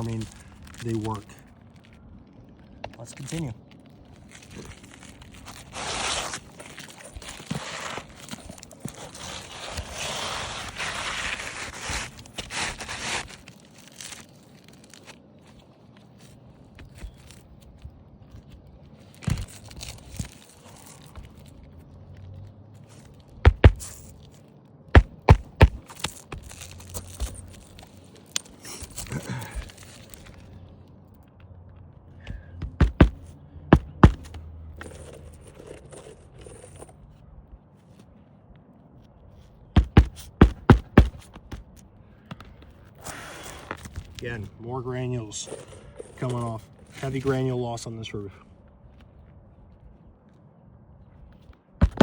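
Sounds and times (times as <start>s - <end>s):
shingles scraping and rustling: 0.0s - 30.7s, 32.2s - 37.0s, 39.4s - 48.0s
hammer driving nails into shingles: 23.5s - 24.0s, 25.0s - 26.2s, 32.6s - 34.4s, 39.8s - 41.6s.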